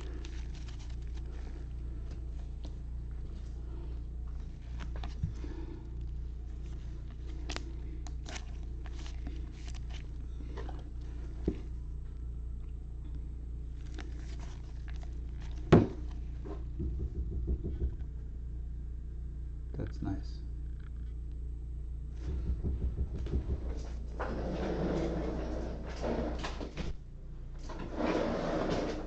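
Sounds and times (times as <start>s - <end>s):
cards rustling and clicking: 0.0s - 2.8s, 4.4s - 5.5s, 6.6s - 10.8s
steady low hum: 0.0s - 29.0s.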